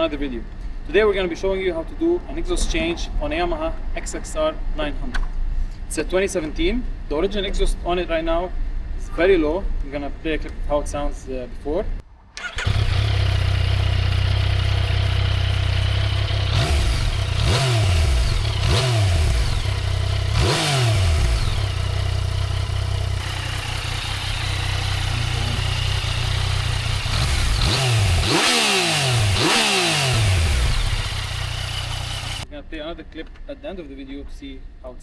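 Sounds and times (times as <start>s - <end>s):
motorcycle engine idling and revving: 12.4s - 32.5s.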